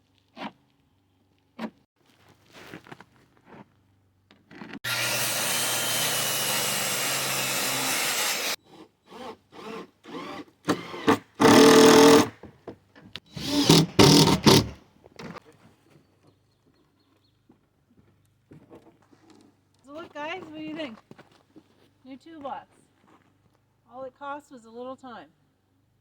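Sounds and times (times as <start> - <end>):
power tool working on wood: 4.8 - 12.3, 13.3 - 14.8.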